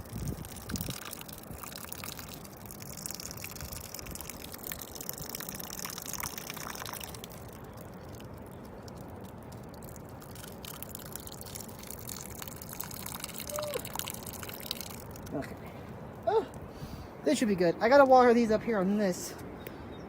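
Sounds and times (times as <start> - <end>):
water pouring from watering can: 0.0 - 15.5
wind rumbling on microphone: 0.0 - 18.8.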